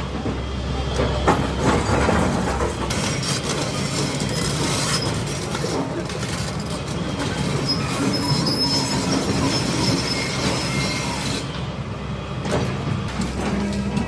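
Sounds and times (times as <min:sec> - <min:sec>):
demolition machine engine rumbling: 0:00.0 - 0:14.0
metal squealing and grinding: 0:02.9 - 0:11.5.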